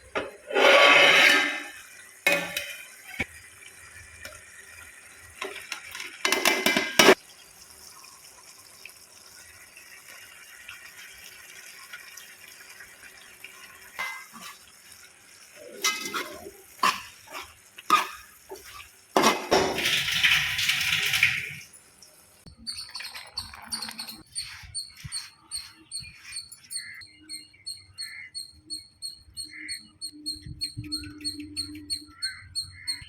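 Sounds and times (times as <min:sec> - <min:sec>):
dishes clinking: 0:00.1 - 0:03.3, 0:05.4 - 0:07.2, 0:14.0 - 0:14.6, 0:15.6 - 0:21.6
liquid splashing and pouring: 0:10.0 - 0:24.2.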